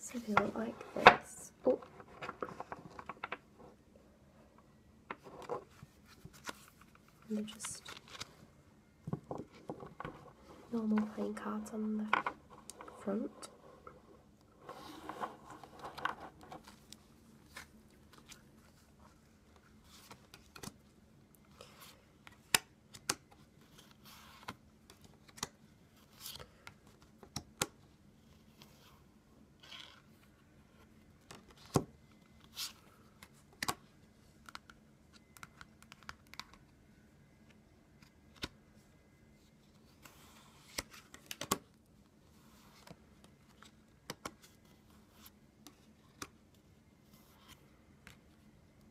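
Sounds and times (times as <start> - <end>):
cards sliding rustle: 5.2 - 8.4, 14.6 - 19.0.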